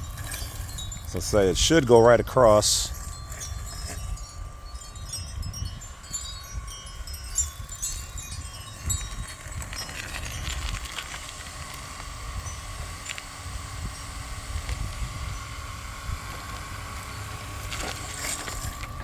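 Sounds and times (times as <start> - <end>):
faint steady hum: 0.0 - 19.0
wind chimes tinkling: 0.0 - 19.0
wind rumble on microphone: 0.0 - 19.0.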